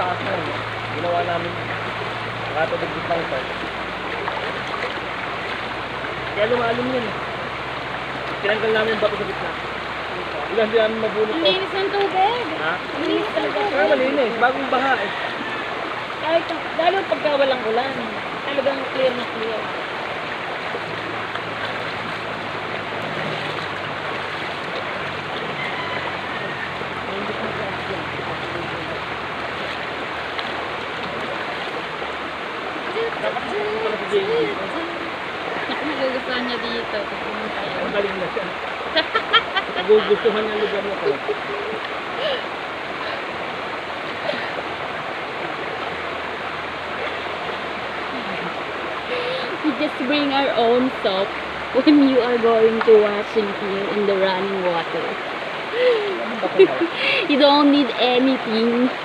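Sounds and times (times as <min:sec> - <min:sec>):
stream flowing over rocks: 0:00.0 - 0:59.0.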